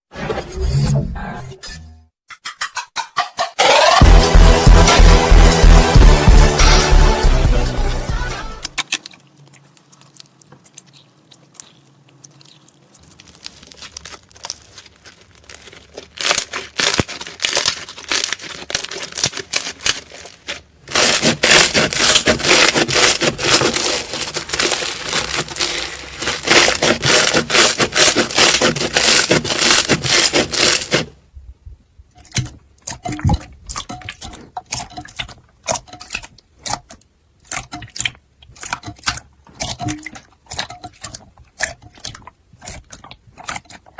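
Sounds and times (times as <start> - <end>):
slime crackling and popping: 8.8 - 31.1.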